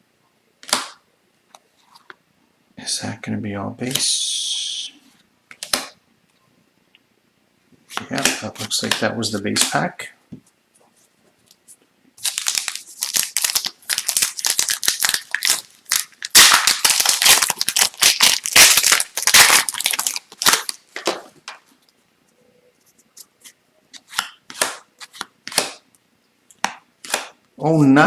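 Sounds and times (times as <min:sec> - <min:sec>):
cards being handled: 0:11.4 - 0:21.7, 0:23.1 - 0:25.8, 0:26.6 - 0:27.4
foil wrapper tearing and crinkling: 0:12.2 - 0:20.8.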